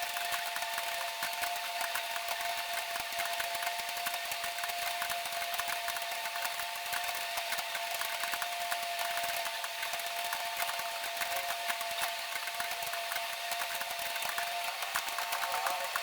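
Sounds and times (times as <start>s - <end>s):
keyboards clattering: 14.8s - 16.0s.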